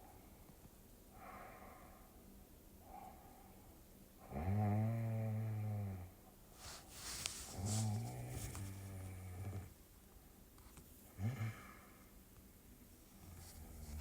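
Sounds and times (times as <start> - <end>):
faint breaths: 0.0 - 4.4, 6.5 - 9.8, 11.1 - 12.4.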